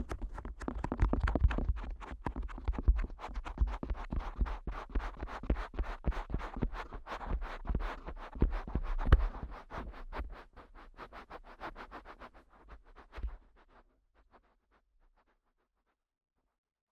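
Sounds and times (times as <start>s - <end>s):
fingers tapping and rubbing microphone: 0.0s - 4.4s, 8.4s - 9.5s.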